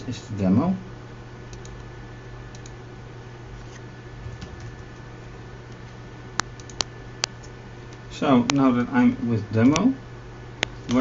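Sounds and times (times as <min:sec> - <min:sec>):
steady low hum: 0:00.0 - 0:11.0
computer keyboard keystrokes: 0:06.5 - 0:06.9.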